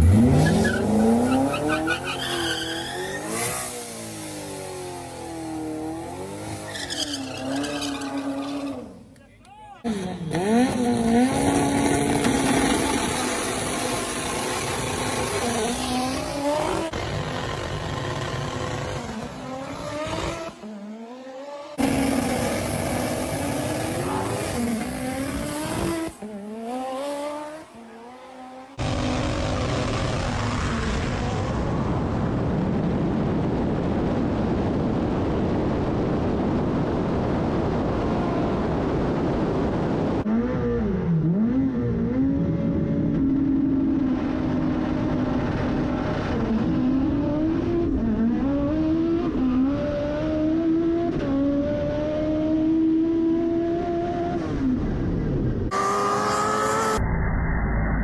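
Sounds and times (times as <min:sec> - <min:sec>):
race car engines at full throttle: 0:00.0 - 0:58.0
wind and road noise: 0:00.0 - 0:58.0.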